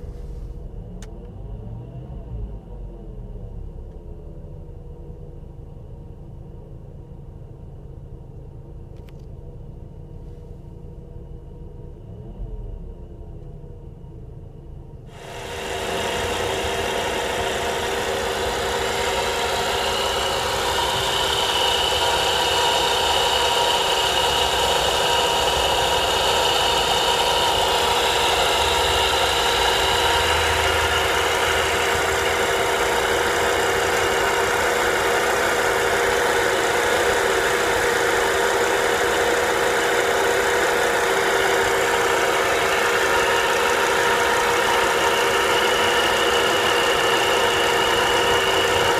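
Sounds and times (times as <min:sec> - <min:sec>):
car engine idling: 0:13.0 - 0:48.9
high whine: 0:15.1 - 0:48.9.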